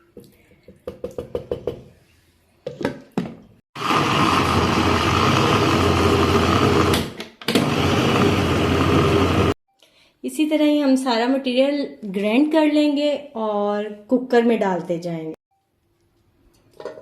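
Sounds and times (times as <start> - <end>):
electric grinder motor running: 3.8 - 9.6.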